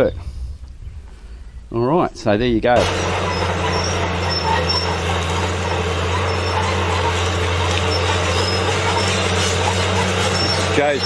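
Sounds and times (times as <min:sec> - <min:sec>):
bulldozer diesel engine drone: 0:02.8 - 0:11.0
short high squeaks: 0:02.8 - 0:11.0.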